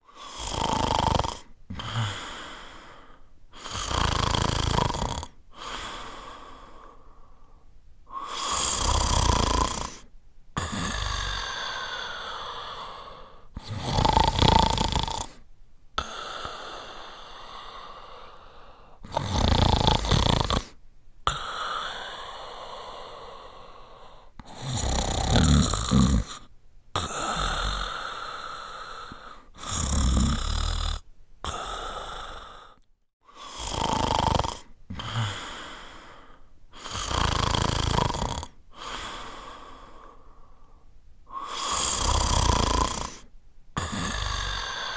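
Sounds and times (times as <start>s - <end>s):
person snoring: 0.0s - 7.5s, 8.1s - 15.4s, 16.0s - 44.9s.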